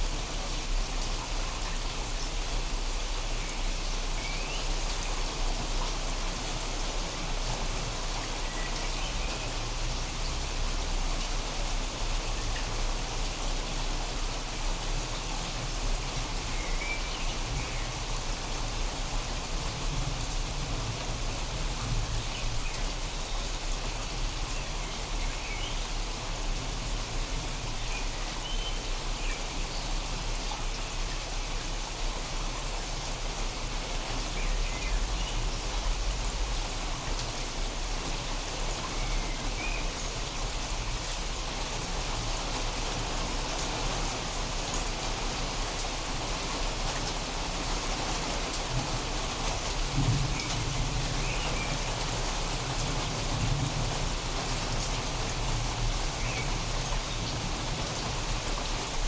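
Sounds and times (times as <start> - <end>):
steady rain falling: 0.0 - 59.0
distant thunder rumbles: 49.7 - 55.9.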